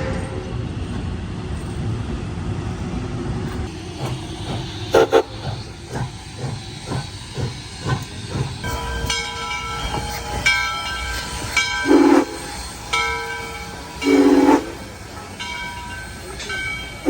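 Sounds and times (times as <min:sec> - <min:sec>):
steam locomotive chuffing: 0:00.0 - 0:17.0
steam whistle chord blasts: 0:08.6 - 0:15.0.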